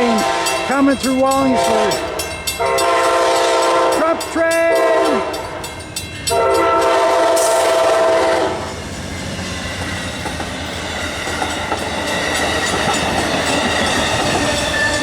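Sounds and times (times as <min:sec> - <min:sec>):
train horn chord: 0:00.0 - 0:05.7, 0:06.3 - 0:08.7
train rumbling past: 0:00.0 - 0:15.0
wheels clattering on rails: 0:08.6 - 0:15.0.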